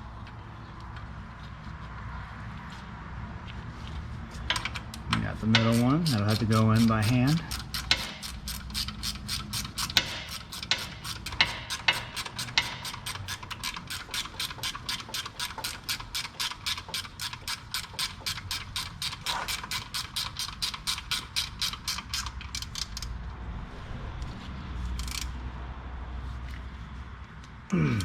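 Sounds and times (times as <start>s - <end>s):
hand ratchet clicking: 4.5s - 23.1s, 25.0s - 25.4s.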